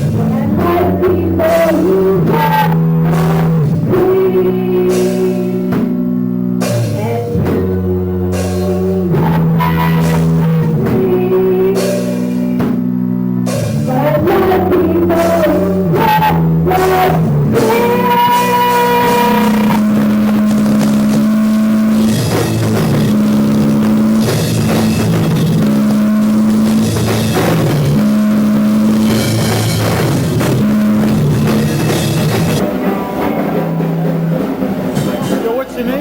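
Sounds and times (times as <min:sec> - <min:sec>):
person singing: 0:00.0 - 0:06.0, 0:06.7 - 0:12.9, 0:13.8 - 0:23.2, 0:30.4 - 0:35.4
rock band playing: 0:00.0 - 0:36.0.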